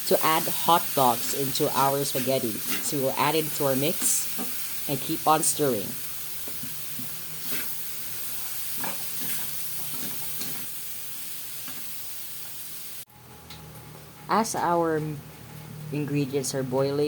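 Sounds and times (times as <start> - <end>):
meat sizzling in oil: 0.0 - 13.1
scraping against a pan: 2.5 - 3.0, 7.0 - 7.8, 8.4 - 10.6.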